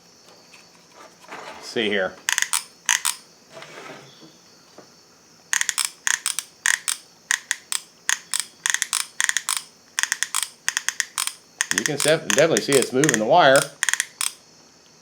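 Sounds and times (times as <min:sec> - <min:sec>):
soldering gun trigger clicking: 0:02.3 - 0:03.2, 0:05.6 - 0:14.4.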